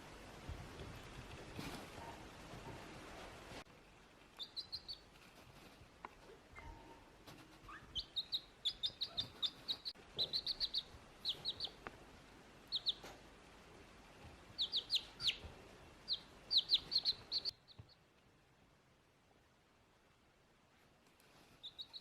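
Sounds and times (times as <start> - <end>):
baby chick peeping: 4.2 - 13.3, 14.2 - 18.2, 21.1 - 22.0.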